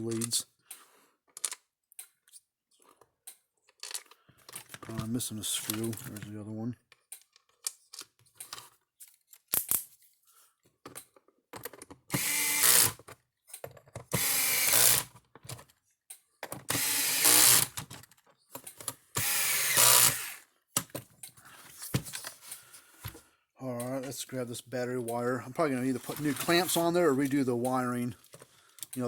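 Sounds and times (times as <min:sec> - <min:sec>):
cordless drill driving screws: 0:12.1 - 0:13.0, 0:14.1 - 0:15.1, 0:16.7 - 0:17.8, 0:19.2 - 0:20.5.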